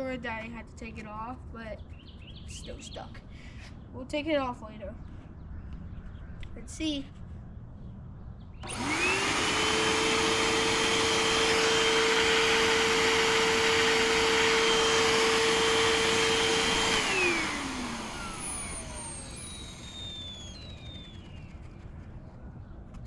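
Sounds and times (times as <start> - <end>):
vacuum cleaner motor whine: 8.6 - 21.9.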